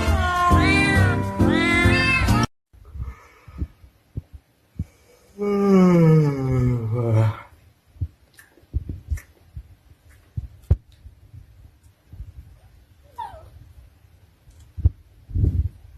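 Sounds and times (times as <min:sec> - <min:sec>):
dog whining: 0:13.0 - 0:13.6.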